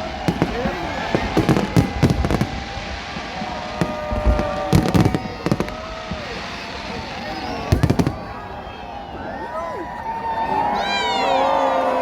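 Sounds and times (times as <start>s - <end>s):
fireworks bangs and crackles: 0.0s - 10.1s.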